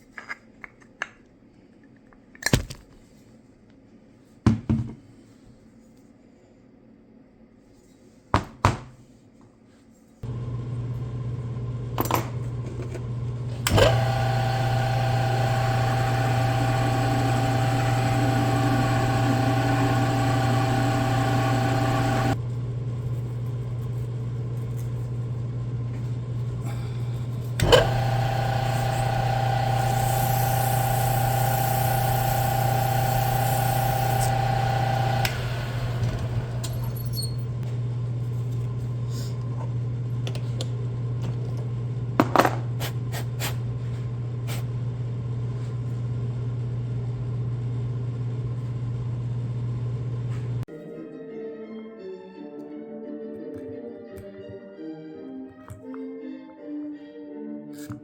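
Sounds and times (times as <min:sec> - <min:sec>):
low electrical hum: 0:09.2 - 0:42.8
electric fan motor running: 0:10.2 - 0:42.2.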